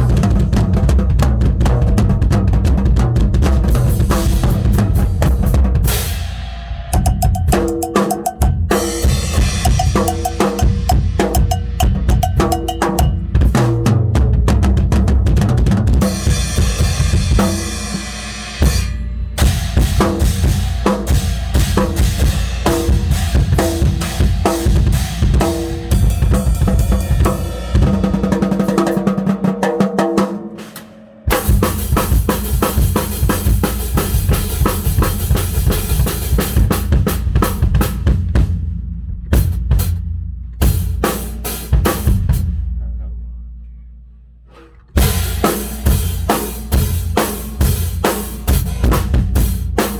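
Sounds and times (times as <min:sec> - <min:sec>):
drum kit fills: 0:00.0 - 0:42.7, 0:44.5 - 0:49.9.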